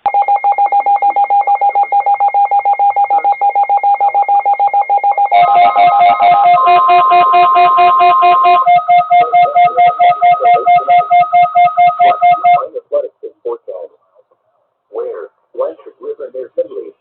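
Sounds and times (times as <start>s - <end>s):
electronic tones pulsing rapidly: 5.3s - 12.7s.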